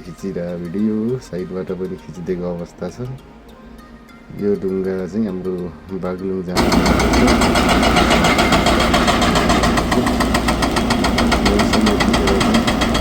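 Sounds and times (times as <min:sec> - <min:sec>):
diesel engine running: 0:06.6 - 0:13.0
hydraulic rock breaker hammering stone: 0:06.6 - 0:13.0.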